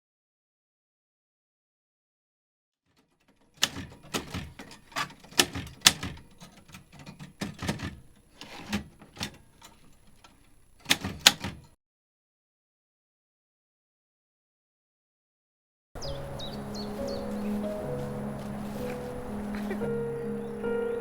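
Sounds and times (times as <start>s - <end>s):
sharp clicking strikes: 3.6s - 11.7s.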